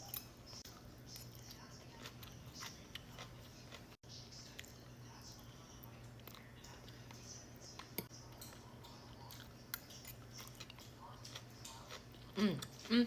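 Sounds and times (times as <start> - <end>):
faint chewing of food: 0.0 - 13.0
low steady hum: 0.0 - 13.0.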